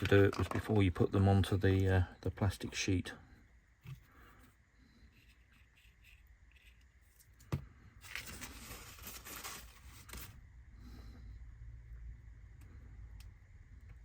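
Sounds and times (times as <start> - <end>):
plastic sheet rustling: 8.0 - 10.4.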